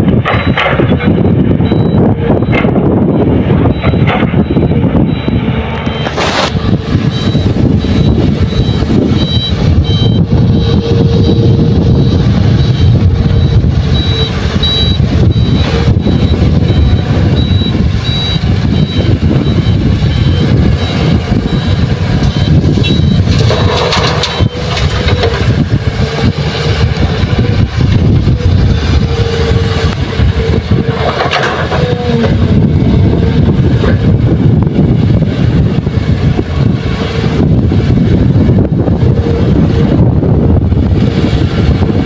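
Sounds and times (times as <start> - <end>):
heavy diesel engines under load: 0.0 - 42.0
short high warning beeps: 7.1 - 23.2.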